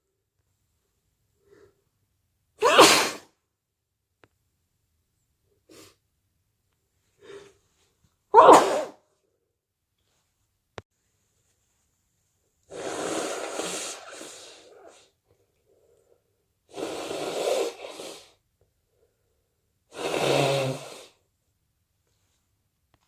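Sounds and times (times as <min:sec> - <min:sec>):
person blowing nose: 0:02.6 - 0:03.3, 0:08.4 - 0:09.0, 0:12.7 - 0:15.1, 0:16.7 - 0:18.4, 0:19.9 - 0:21.2.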